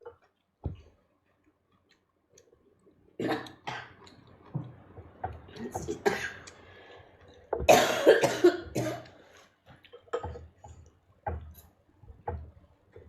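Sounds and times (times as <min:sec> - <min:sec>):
person coughing: 0:05.6 - 0:06.4, 0:07.6 - 0:09.2.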